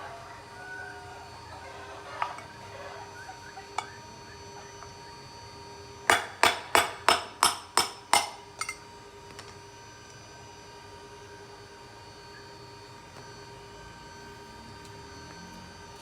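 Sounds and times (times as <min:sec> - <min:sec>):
hammer tapping on metal: 0:06.1 - 0:08.8.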